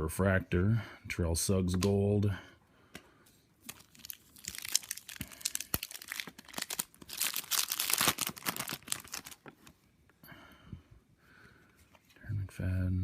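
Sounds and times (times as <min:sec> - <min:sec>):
foil wrapper crinkling: 0:03.6 - 0:09.7.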